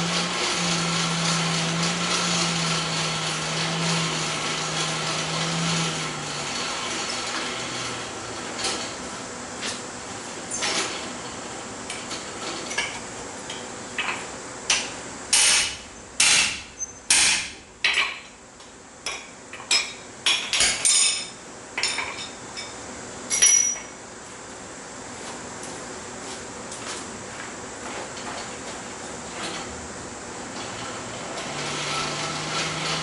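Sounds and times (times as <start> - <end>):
hammer striking steel on anvil: 14.7 - 18.3.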